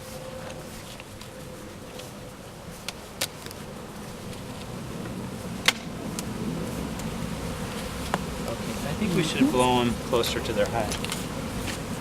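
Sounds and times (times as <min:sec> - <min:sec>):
honeybees buzzing: 0:06.8 - 0:10.2.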